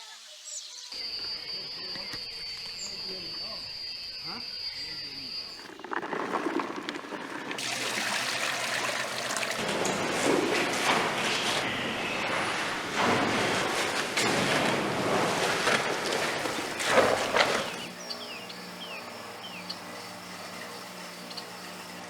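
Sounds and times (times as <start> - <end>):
rushing splashing water: 7.6 - 11.8, 12.5 - 17.9
steady machine hum: 7.6 - 22.0.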